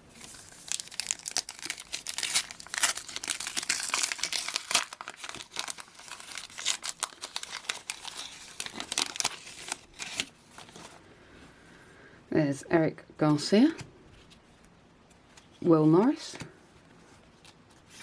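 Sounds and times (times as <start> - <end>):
foil packet crinkling and tearing: 0.0 - 10.9.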